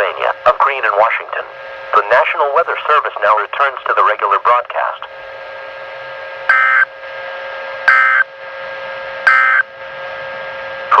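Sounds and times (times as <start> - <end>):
radio hum and hiss: 0.0 - 11.0
harsh electronic data bursts: 6.5 - 6.9, 7.9 - 8.3, 9.3 - 9.6.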